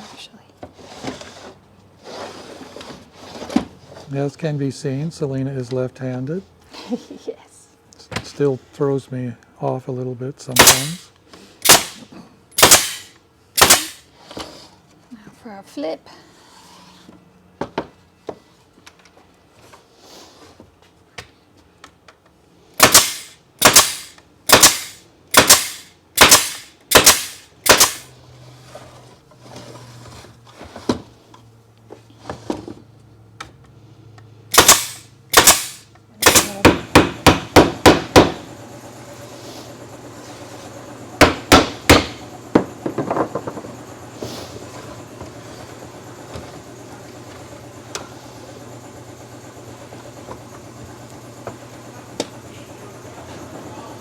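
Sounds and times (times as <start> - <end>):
steady machine hum: 8.5 - 14.3, 22.5 - 30.7, 33.8 - 54.0
staple gun firing into wood: 10.6 - 11.0, 11.6 - 12.0, 12.6 - 14.0, 22.8 - 28.1, 34.5 - 38.4, 41.2 - 42.2.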